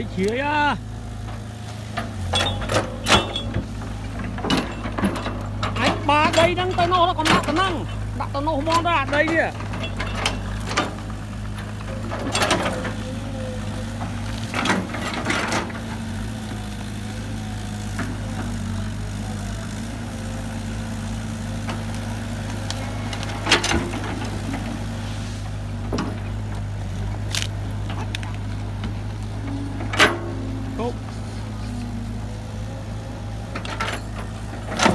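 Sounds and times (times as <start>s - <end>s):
heavy diesel engine running: 0.0s - 34.9s
metallic knocks and clanks: 1.9s - 13.0s.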